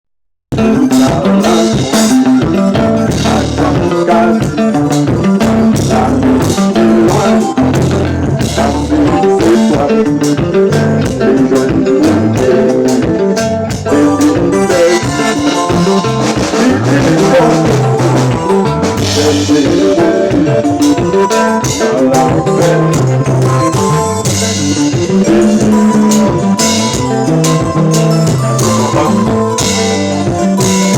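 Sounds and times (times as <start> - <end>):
drum kit beat: 0.5 - 30.9
loud band music: 0.5 - 30.9.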